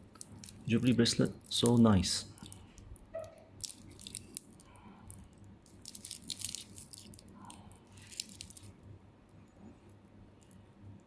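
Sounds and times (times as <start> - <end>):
metal watch bracelet clinking: 3.2 - 8.7.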